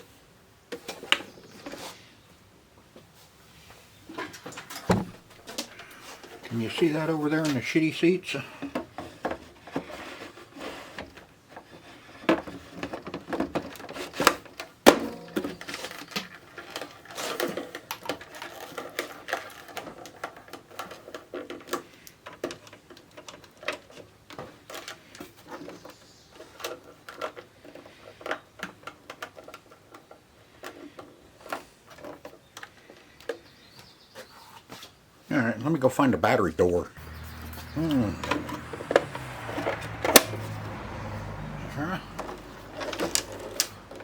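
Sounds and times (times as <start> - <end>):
small objects clicking and knocking: 42.2 - 44.0.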